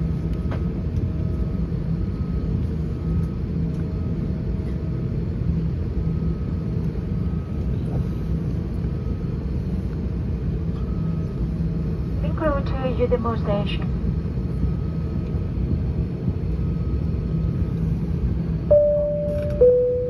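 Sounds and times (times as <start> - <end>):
airplane cabin rumble: 0.0 - 20.0.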